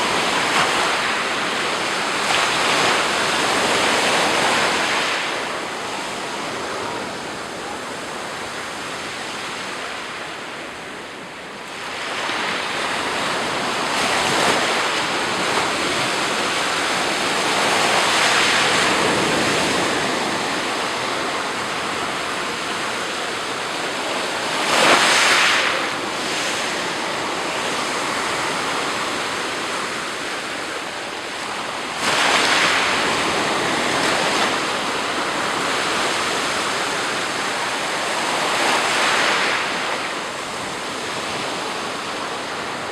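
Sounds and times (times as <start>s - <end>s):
small waves breaking on shore: 0.0s - 42.9s.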